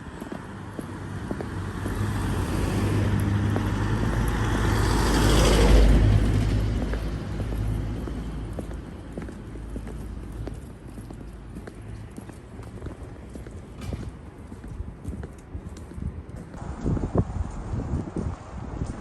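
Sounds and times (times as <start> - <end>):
car passing by: 1.0 - 8.6.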